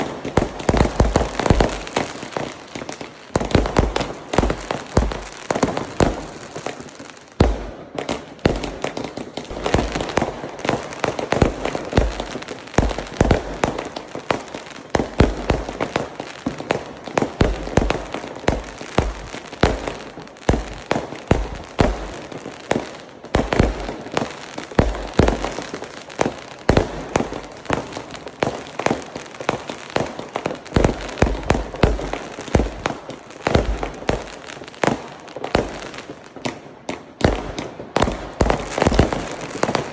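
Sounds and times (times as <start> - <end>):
fireworks bangs and crackling: 0.0 - 39.9
deep fireworks booms: 3.4 - 6.8, 7.4 - 14.0, 30.7 - 34.4, 37.2 - 39.9.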